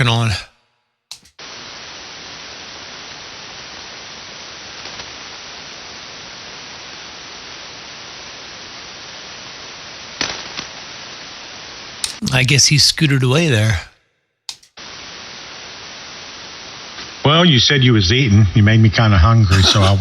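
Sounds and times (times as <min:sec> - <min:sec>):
radio receiver static hiss: 0:00.0 - 0:00.4, 0:01.1 - 0:13.9, 0:14.5 - 0:17.3, 0:19.4 - 0:20.0
faint radio crackle: 0:01.4 - 0:13.9, 0:14.8 - 0:17.3.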